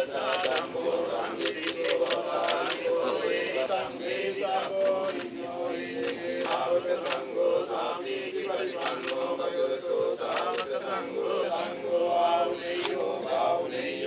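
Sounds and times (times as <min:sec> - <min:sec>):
monks chanting in unison: 0:00.0 - 0:14.0
camera shutter clicks: 0:10.3 - 0:10.8.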